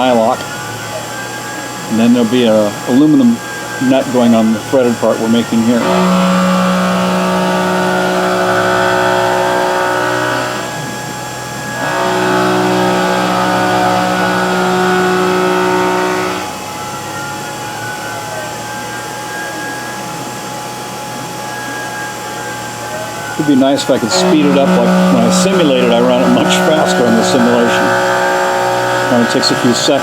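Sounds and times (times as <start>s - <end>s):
milling machine cutting aluminium: 0.0s - 30.0s
sliding machine tones: 0.0s - 30.0s.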